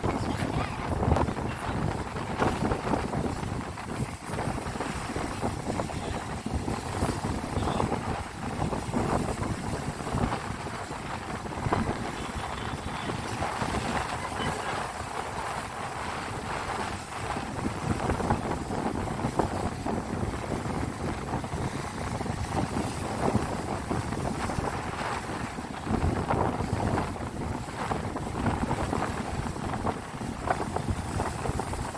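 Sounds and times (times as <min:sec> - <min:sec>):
sea waves breaking: 0:00.0 - 0:31.9
wind buffeting microphone: 0:00.0 - 0:31.9.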